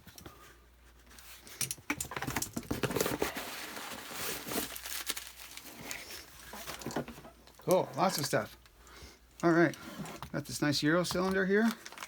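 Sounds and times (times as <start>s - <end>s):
rustling packaging: 0.4s - 8.8s, 9.4s - 12.0s
items clicking and knocking: 1.5s - 3.4s.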